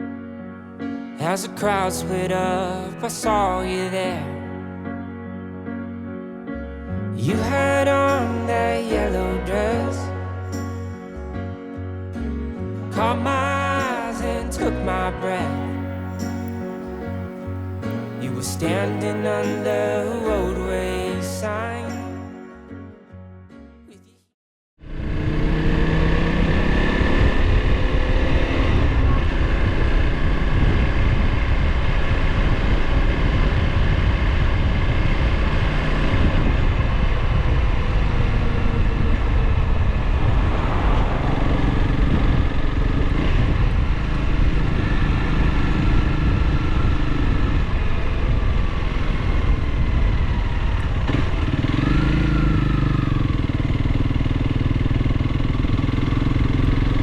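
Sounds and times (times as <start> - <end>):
motorcycle engine running: 24.8 - 40.2, 41.3 - 57.0.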